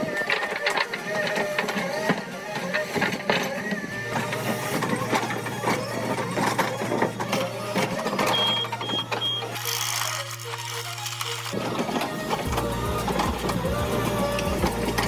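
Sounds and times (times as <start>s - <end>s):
short high beeps: 8.3s - 11.6s.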